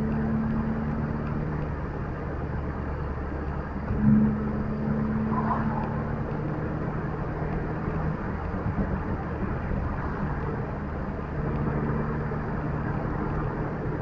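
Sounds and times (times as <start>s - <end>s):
car engine and road noise: 0.0s - 14.0s.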